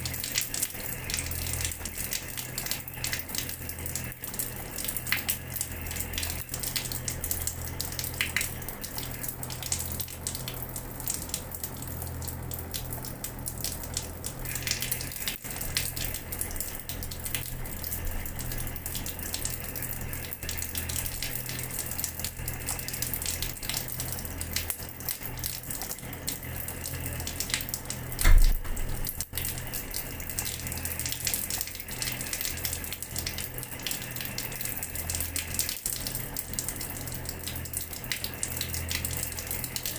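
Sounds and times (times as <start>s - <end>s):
tap water splashing onto floor: 27.3s - 29.6s
dull thump: 28.2s - 28.9s.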